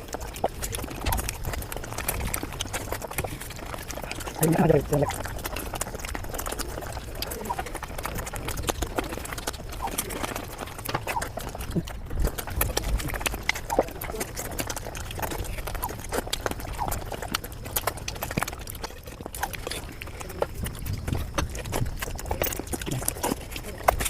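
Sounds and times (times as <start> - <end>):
sped-up chewing and mouth clicks: 0.0 - 24.0.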